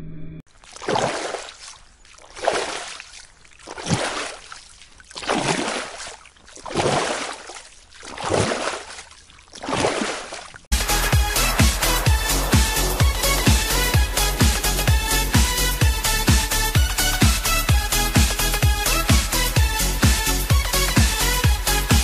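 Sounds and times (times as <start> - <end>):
swimming strokes splashing: 0.5 - 10.7.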